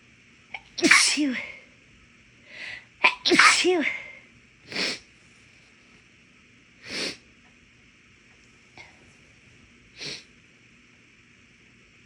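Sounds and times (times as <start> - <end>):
woman sneezing breathily: 0.8 - 1.6, 3.0 - 5.0.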